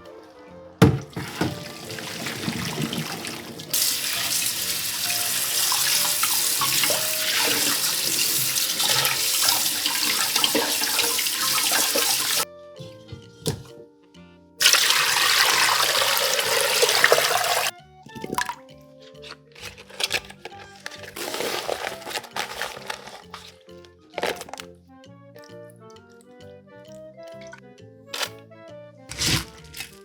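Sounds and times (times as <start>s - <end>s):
handling knocks: 0.8s - 3.7s
tap water running into sink: 0.8s - 12.4s, 14.6s - 18.6s.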